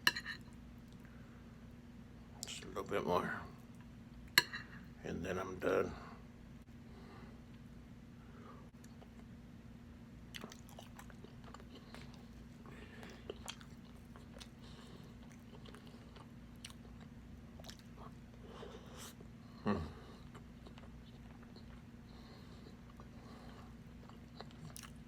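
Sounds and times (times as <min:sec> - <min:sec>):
close chewing and biting: 0:22.6 - 0:25.0.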